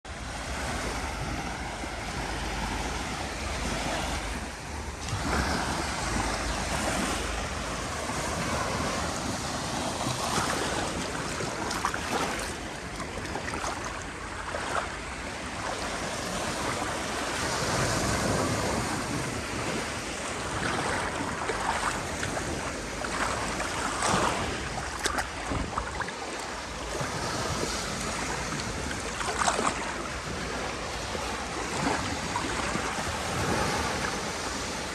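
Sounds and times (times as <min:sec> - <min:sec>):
wind: 0:00.0 - 0:34.9
waves breaking on shore: 0:00.1 - 0:34.9.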